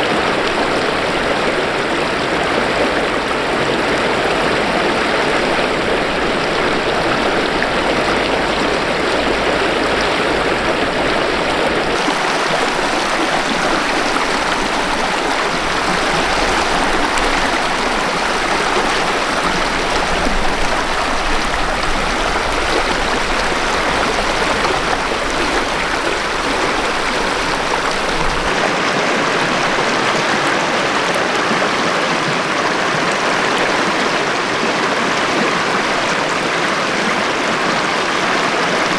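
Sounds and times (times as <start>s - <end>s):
river rushing over rocks: 0.0s - 38.9s.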